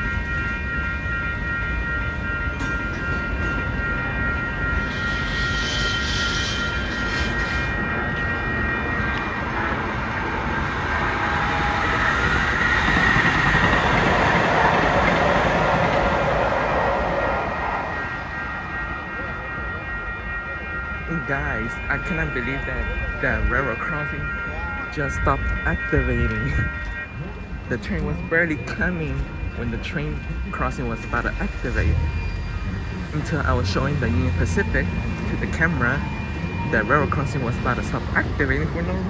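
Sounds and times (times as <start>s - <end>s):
freight train rumbling past: 0.0s - 39.0s
thin high ringing tones: 0.0s - 39.0s.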